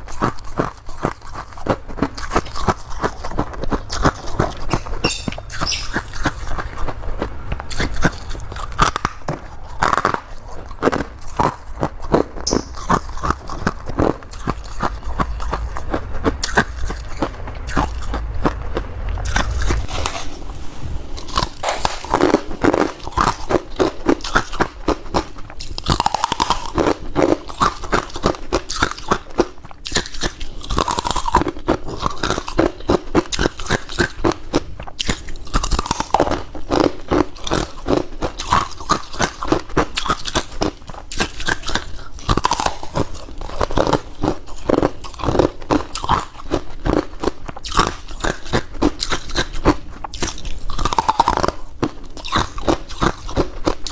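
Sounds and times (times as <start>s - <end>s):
person chewing crunchy ice: 0.0s - 20.6s, 21.2s - 53.9s
crunchy bite of frost: 21.2s - 32.7s.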